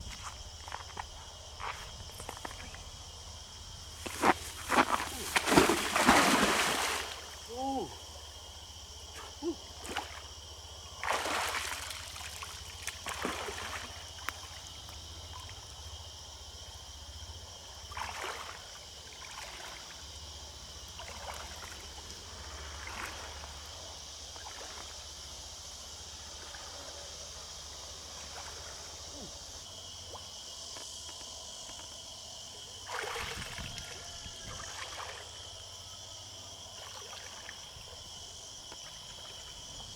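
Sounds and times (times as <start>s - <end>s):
insects humming: 0.0s - 39.9s
river water trickling: 0.4s - 39.9s
water splashes: 4.0s - 7.9s, 11.0s - 14.5s, 32.8s - 35.4s.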